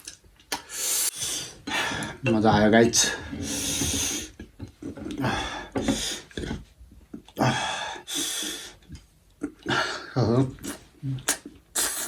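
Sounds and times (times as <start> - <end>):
sharp breaths: 0.6 - 2.2
noodle slurps: 10.6 - 12.0.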